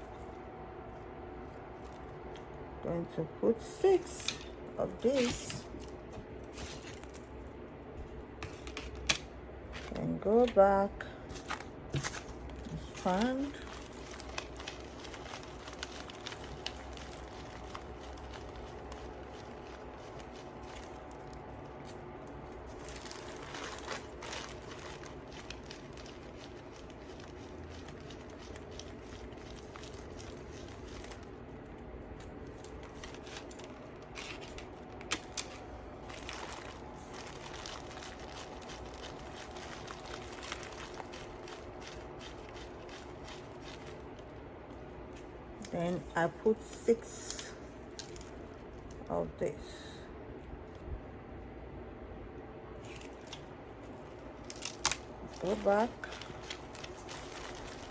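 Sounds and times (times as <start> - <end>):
low steady hum: 0.0 - 57.9
beads clicking and rustling: 11.4 - 45.3, 47.2 - 49.1, 52.8 - 57.9.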